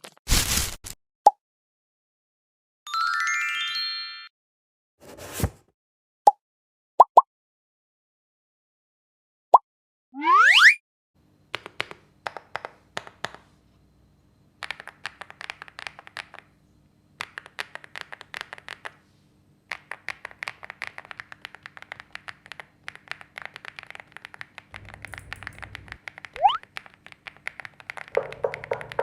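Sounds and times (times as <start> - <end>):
mechanical keyboard typing: 11.5 - 13.4, 14.6 - 16.5, 17.2 - 19.0, 19.7 - 29.0.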